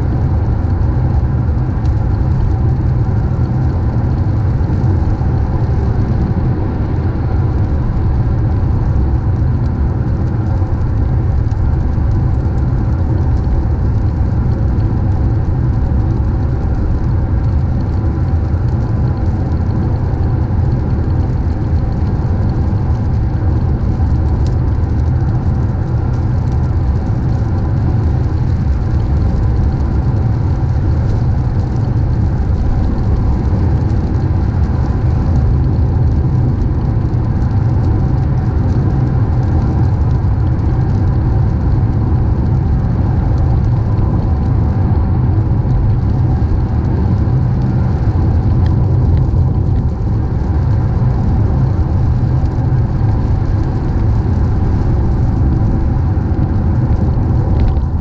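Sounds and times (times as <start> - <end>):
car road and engine noise: 0.0 - 24.4, 55.1 - 58.0.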